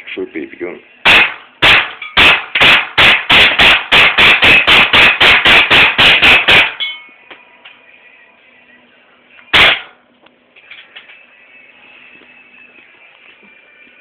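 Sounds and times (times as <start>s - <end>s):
air pistol rapid shots: 1.0s - 6.8s, 9.5s - 10.0s.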